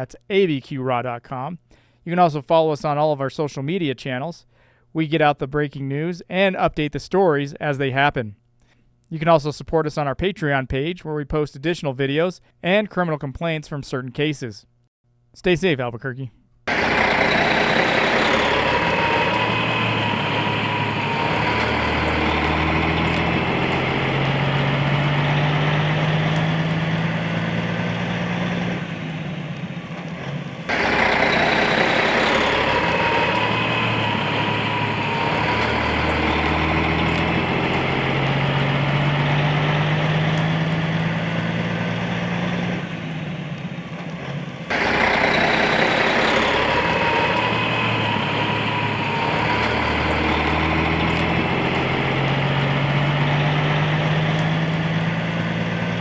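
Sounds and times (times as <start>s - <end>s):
vehicle engine running: 16.7s - 56.0s.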